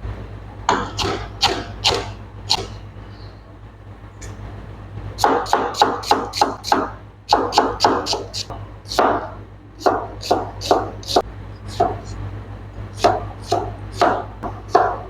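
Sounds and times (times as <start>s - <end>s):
knife chopping on a cutting board: 0.7s - 2.8s, 5.2s - 12.2s, 13.0s - 15.0s.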